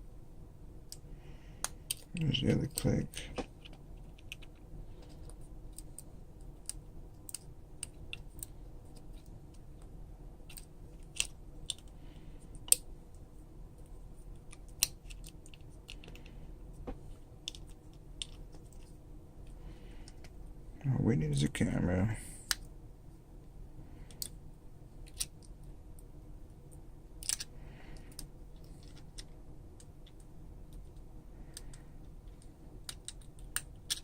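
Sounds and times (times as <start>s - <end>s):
faint low hum: 0.0s - 34.0s
small clicks of tools and parts: 24.0s - 24.4s, 27.2s - 34.0s.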